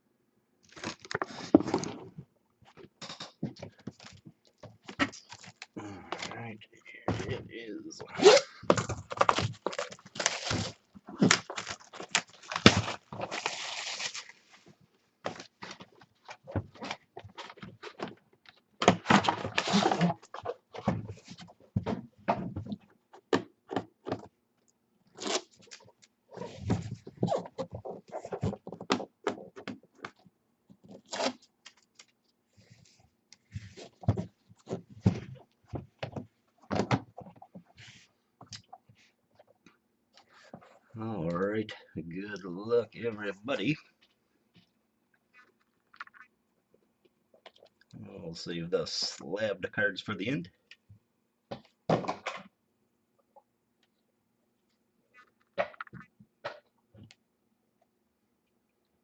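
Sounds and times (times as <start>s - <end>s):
packaging rustling: 8.7s - 14.5s.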